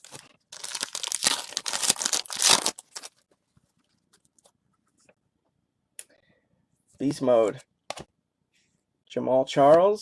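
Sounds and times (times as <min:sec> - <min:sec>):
wrapper crinkling and tearing: 0:00.0 - 0:03.2.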